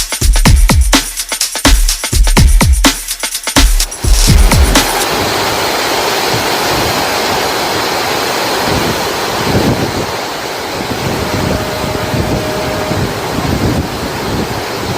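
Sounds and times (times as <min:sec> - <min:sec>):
heavy rain pouring: 0:03.9 - 0:14.9
wind rumbling on microphone: 0:03.9 - 0:14.9.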